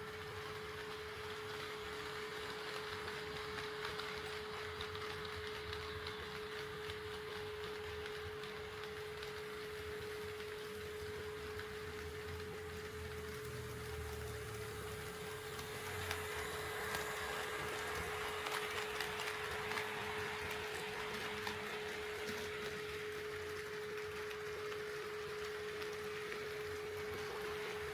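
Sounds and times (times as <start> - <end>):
model train humming: 0.0 - 27.9.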